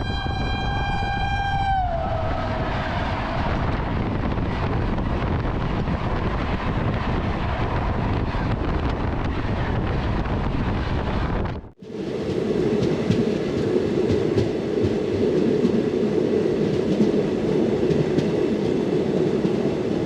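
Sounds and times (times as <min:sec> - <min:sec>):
locomotive horn: 0:00.0 - 0:03.7
train rushing and rattling past: 0:00.0 - 0:20.0.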